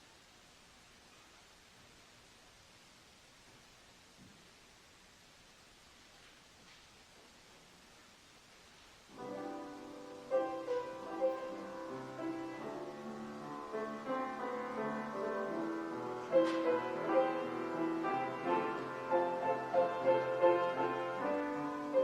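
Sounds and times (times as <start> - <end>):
slow piano music: 9.1 - 22.0.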